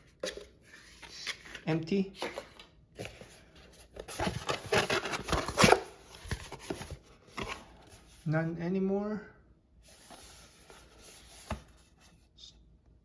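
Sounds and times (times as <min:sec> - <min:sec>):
packaging rustling and crinkling: 0:00.2 - 0:07.9.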